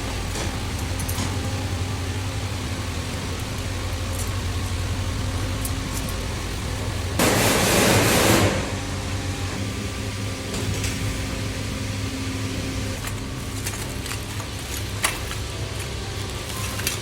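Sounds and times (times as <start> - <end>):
loud hiss: 0.0 - 10.2
machinery humming: 0.0 - 17.0.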